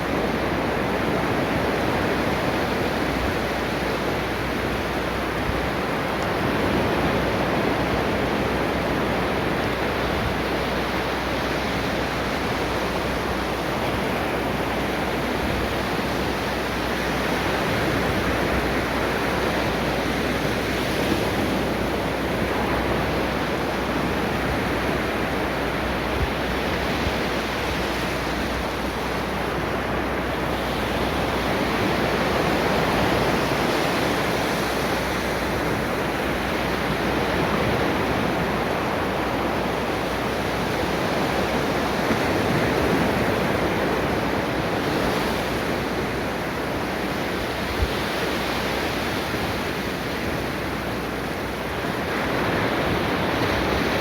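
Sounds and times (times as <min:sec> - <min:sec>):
ocean waves breaking on beach: 0:00.0 - 0:54.0.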